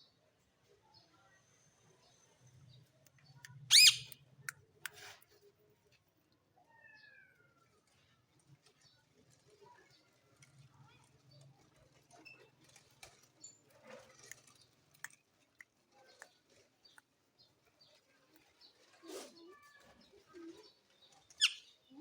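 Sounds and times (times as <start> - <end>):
parakeet chirps and clicks: 3.1 - 4.2, 21.3 - 21.6
parakeet short call: 3.7 - 4.1.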